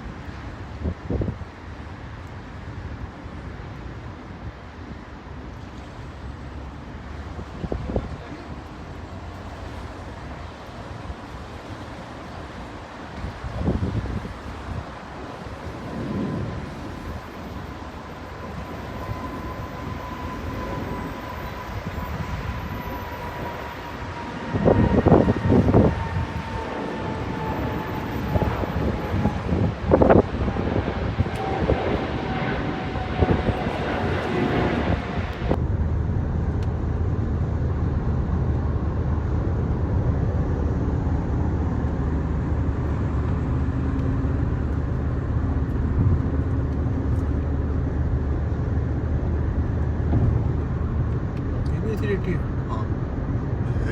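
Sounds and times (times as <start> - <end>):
jet engine whine falling in pitch: 15.0 - 53.9
rumbling background: 24.2 - 53.9.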